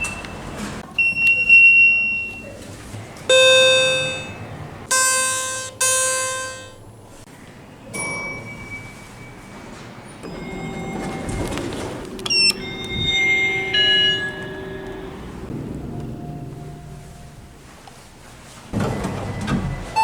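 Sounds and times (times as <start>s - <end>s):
elevator bell chime: 0.0s - 2.6s, 3.3s - 6.8s, 7.9s - 17.7s
electronic chime tones: 3.3s - 6.8s
held electronic beep: 3.3s - 6.8s
low machinery hum: 9.7s - 20.0s.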